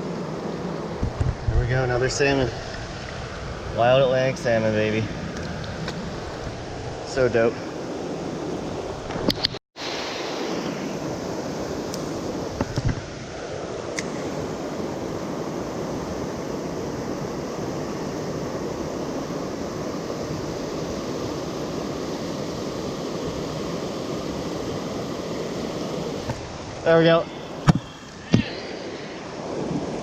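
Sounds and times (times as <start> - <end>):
river water rushing: 9.8 - 30.0.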